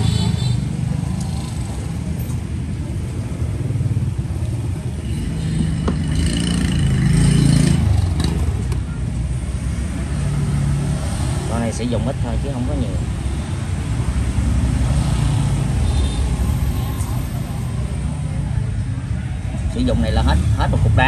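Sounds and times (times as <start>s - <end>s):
road traffic engines: 0.0s - 21.0s.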